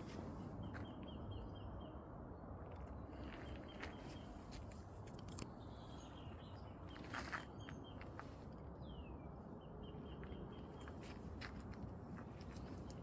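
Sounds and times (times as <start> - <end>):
low steady outdoor background: 0.0 - 13.0
small clicks and rustles: 2.7 - 5.6.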